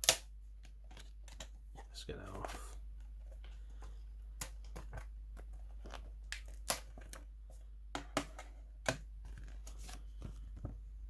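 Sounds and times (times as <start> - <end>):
paper rustling and scraping: 9.2 - 10.8.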